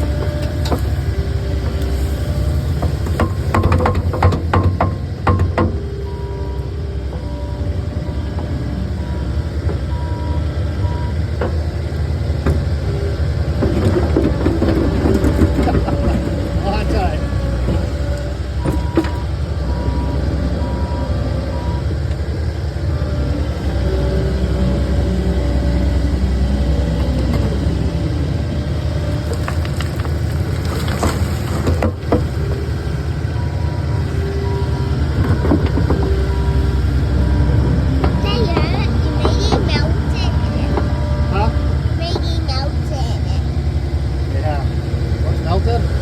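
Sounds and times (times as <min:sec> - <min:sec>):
metal clanks and rattles: 0:00.0 - 0:06.1
diesel engine running: 0:00.0 - 0:46.0.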